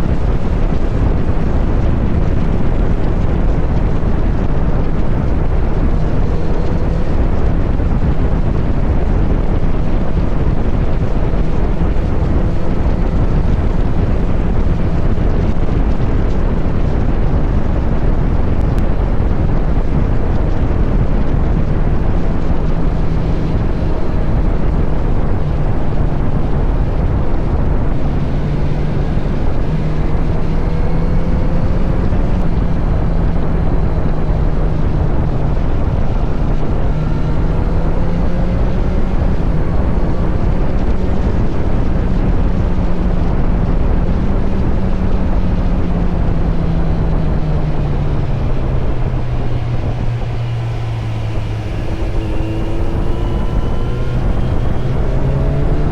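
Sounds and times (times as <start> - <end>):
motorcycle engine revving: 0.0 - 55.9
wind noise on microphone: 0.0 - 55.9.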